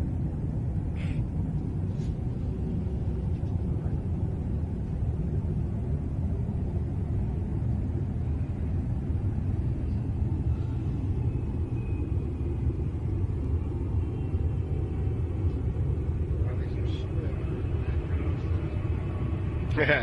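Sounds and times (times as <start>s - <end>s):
low rumbling drone: 0.0s - 20.0s.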